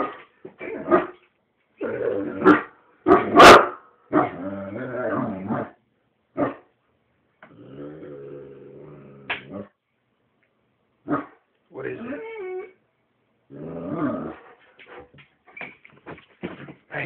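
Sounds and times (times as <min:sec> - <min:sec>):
dog growling and barking: 0:00.0 - 0:01.2, 0:01.8 - 0:05.8, 0:07.5 - 0:09.8, 0:13.5 - 0:14.5.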